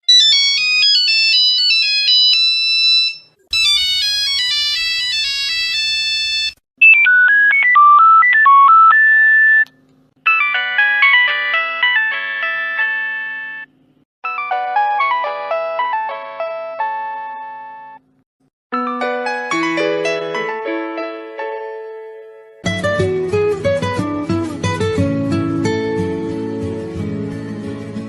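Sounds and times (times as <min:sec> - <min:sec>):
phone ringtone melodies: 0:00.1 - 0:09.6, 0:10.2 - 0:18.0, 0:18.8 - 0:21.3.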